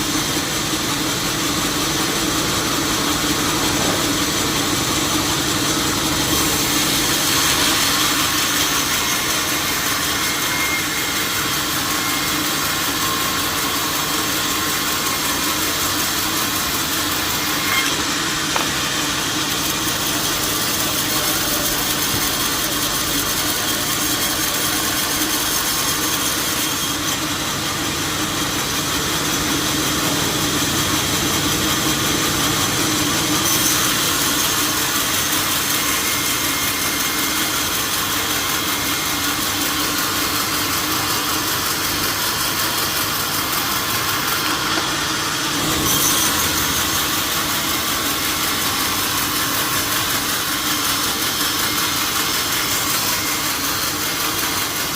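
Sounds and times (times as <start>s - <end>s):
sawmill machinery drone: 0.0s - 54.9s.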